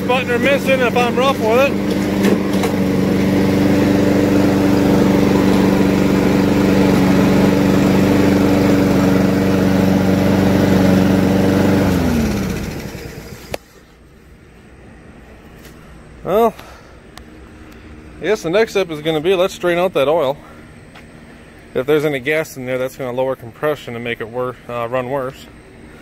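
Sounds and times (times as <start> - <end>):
engine spinning down: 0.0 - 13.6
lawnmower engine running: 0.0 - 13.8.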